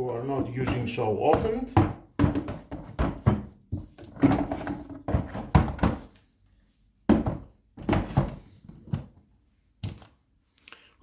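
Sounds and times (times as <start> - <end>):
tools thudding into plastic toolbox: 0.4 - 6.2, 7.1 - 9.1.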